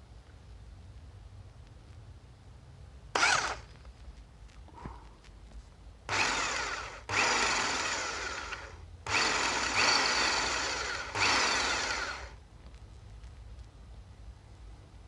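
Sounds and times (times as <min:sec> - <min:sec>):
power drill boring into metal: 0:03.2 - 0:03.6, 0:06.1 - 0:12.4.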